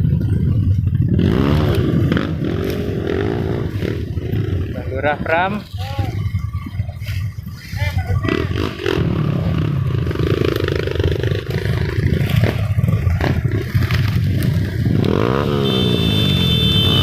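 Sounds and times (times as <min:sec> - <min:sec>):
vehicle engine running loudly: 0:00.0 - 0:17.0
multi-tone horn: 0:15.2 - 0:17.0.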